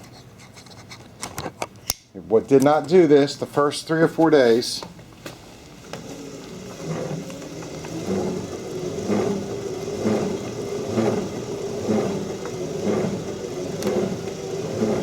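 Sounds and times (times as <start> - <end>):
exercise machine grinding noise: 5.8 - 15.0.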